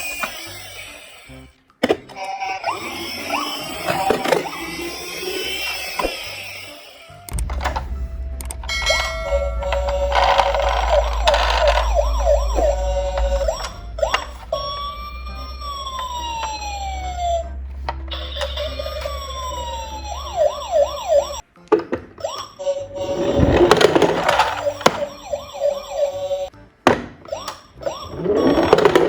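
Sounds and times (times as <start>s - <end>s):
police and ambulance sirens: 2.2s - 21.4s.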